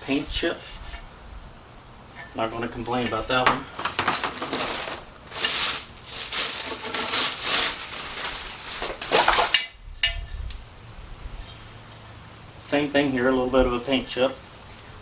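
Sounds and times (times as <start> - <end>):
packing material rustling: 3.7 - 9.6.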